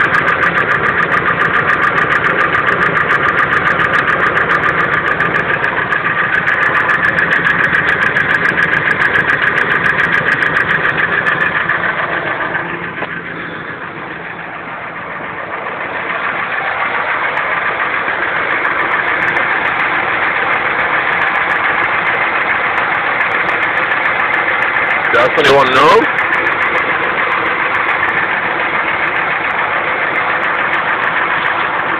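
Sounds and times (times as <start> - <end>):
engine idling: 0.0 - 31.9
engine knocking: 0.0 - 31.9.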